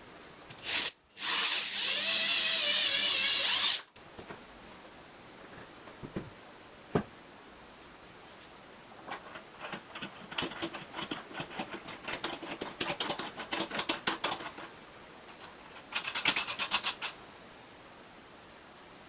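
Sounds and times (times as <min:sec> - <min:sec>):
small mechanical clicks and rattles: 0:09.1 - 0:14.7, 0:15.3 - 0:17.2.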